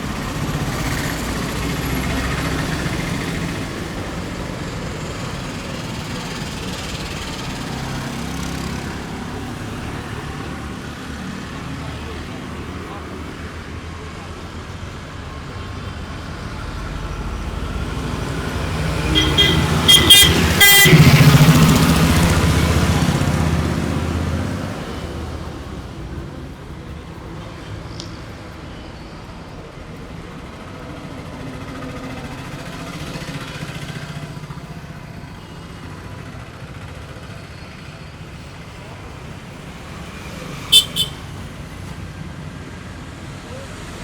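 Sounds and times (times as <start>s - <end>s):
vehicle passing: 0.0s - 28.5s, 30.1s - 37.4s, 38.8s - 44.0s
steady traffic noise: 0.0s - 44.0s
car horn honking: 18.9s - 22.3s, 40.5s - 41.4s.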